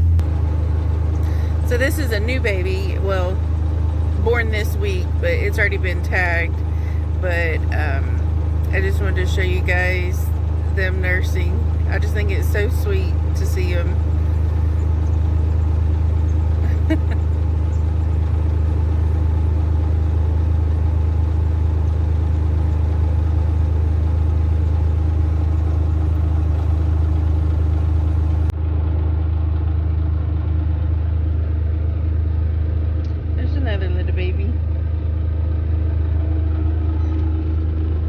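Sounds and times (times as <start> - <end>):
vehicle engine idling: 0.0 - 28.6.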